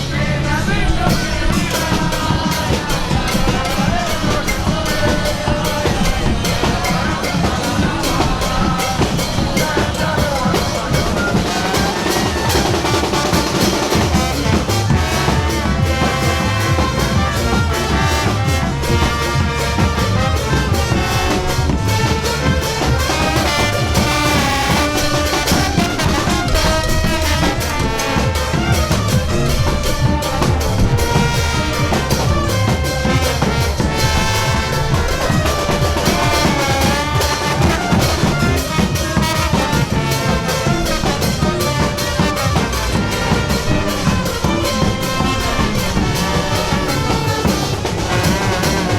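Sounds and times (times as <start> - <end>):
brass playing a melody: 0.0 - 48.9
steady drum beat: 0.9 - 48.9.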